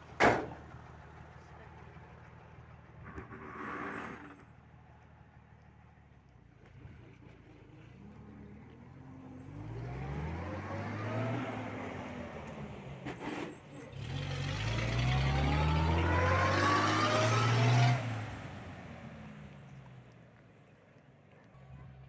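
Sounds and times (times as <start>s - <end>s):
vehicle engine accelerating: 6.6s - 20.2s.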